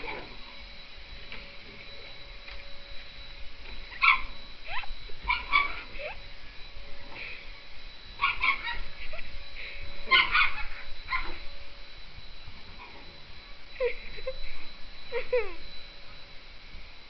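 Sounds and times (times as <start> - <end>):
dog yipping and whining: 3.9 - 6.2, 8.2 - 9.3, 10.1 - 11.4.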